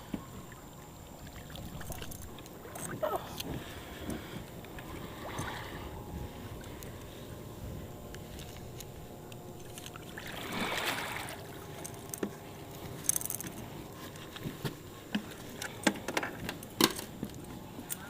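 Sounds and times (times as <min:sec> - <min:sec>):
knocks and clicks against boat: 0:00.0 - 0:05.6, 0:11.6 - 0:18.0
water splashing: 0:09.6 - 0:11.9.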